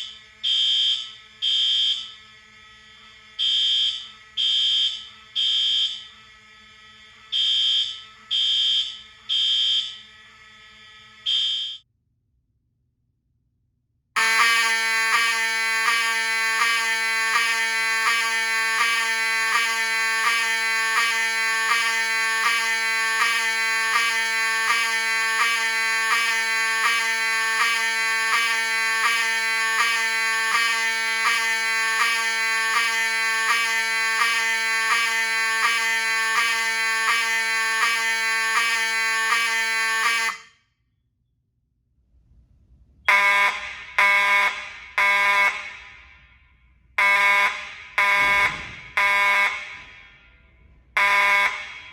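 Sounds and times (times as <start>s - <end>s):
fire alarm blasts: 0.0s - 2.3s, 3.4s - 6.2s, 6.9s - 11.8s, 14.2s - 40.6s, 43.1s - 46.3s, 47.0s - 50.4s, 51.0s - 51.9s
pulsing horn tone: 14.2s - 40.5s.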